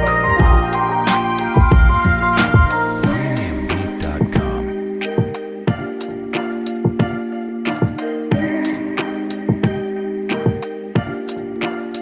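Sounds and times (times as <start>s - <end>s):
drum beat: 0.0s - 6.0s, 6.8s - 8.0s
synth chords: 0.0s - 12.0s.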